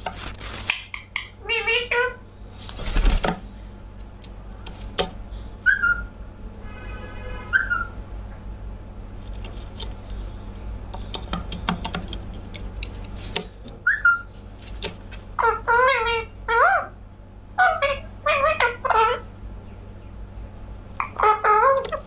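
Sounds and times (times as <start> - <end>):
rustling: 0.0 - 0.8
parakeet whistled chirps: 5.6 - 6.1, 7.5 - 8.0, 13.8 - 14.3.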